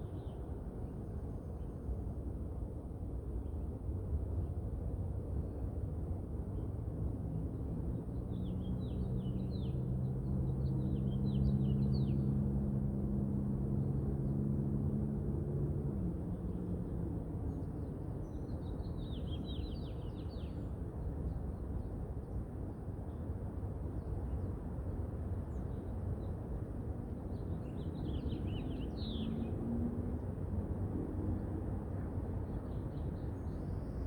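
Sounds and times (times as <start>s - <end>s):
wind: 0.0s - 34.0s
low engine hum: 6.7s - 21.8s, 23.2s - 34.0s.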